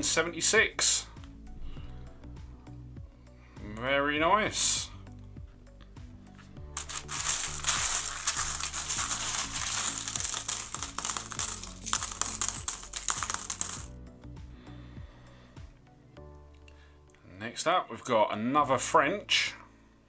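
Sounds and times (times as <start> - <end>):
coins rattling and clinking: 6.8 - 14.0.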